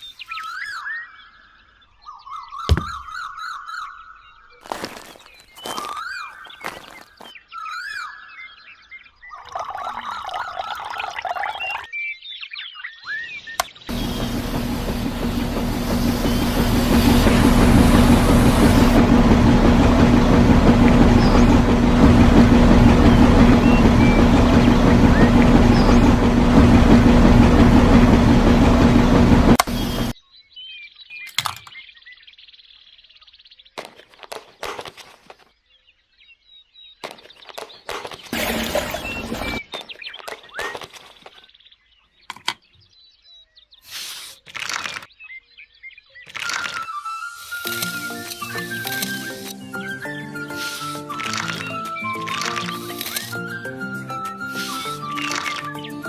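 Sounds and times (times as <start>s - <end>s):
birds chirping: 0.0s - 56.0s
crunching and scraping: 4.6s - 7.4s, 33.8s - 35.5s, 37.0s - 41.4s
small motor humming and rattling: 13.9s - 30.2s, 37.9s - 39.6s.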